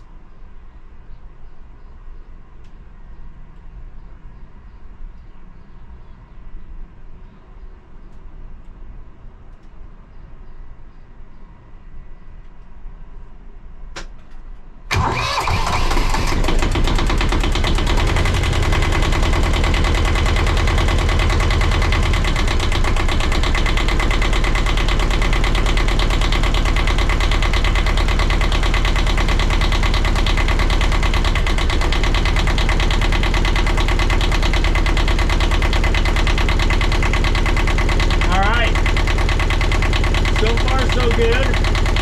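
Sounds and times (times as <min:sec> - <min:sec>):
diesel engine starting and idling: 0:14.9 - 0:42.0.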